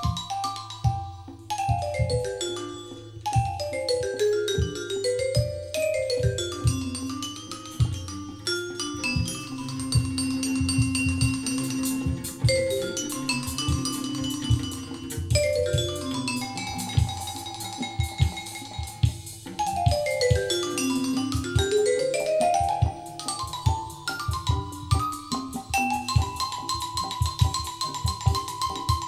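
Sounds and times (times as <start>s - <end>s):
quick runs of pitched notes: 0.1s - 29.0s
low thumping beat: 8.9s - 29.0s.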